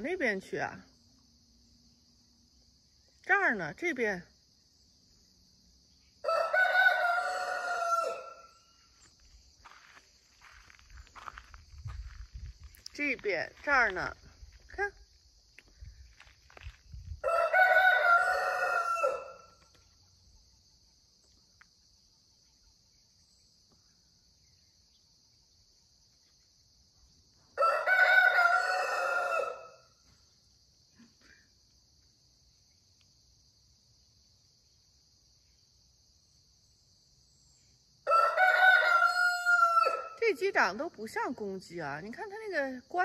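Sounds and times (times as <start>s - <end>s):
rooster crowing: 6.2s - 8.7s, 17.2s - 19.6s, 27.6s - 29.9s, 38.0s - 40.2s.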